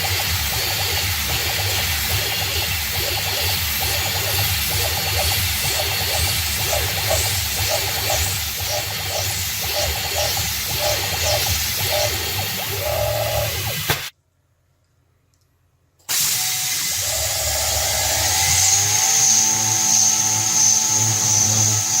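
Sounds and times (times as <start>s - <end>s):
hiss of mist coolant: 0.0s - 14.1s, 16.1s - 22.0s
milling machine spindle humming: 0.0s - 14.1s, 16.5s - 22.0s
short stepper motor tones: 0.0s - 14.1s.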